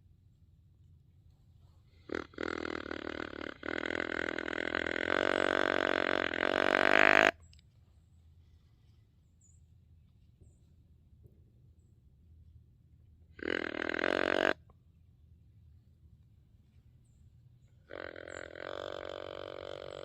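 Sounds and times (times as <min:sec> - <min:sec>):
low buzzy deer grunt call: 0:01.9 - 0:07.4, 0:13.3 - 0:14.7, 0:17.8 - 0:20.0.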